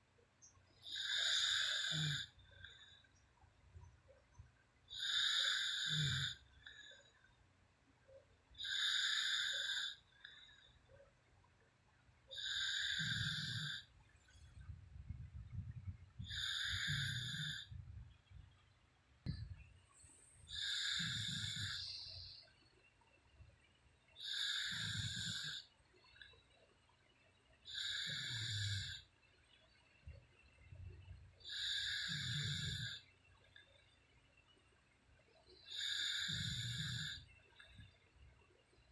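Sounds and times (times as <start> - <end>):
woman snoring: 0.9 - 2.4, 5.0 - 6.4, 8.6 - 10.0, 12.4 - 13.9, 16.2 - 17.7, 20.5 - 22.4, 24.2 - 25.7, 27.7 - 29.0, 31.5 - 33.0, 35.7 - 37.2.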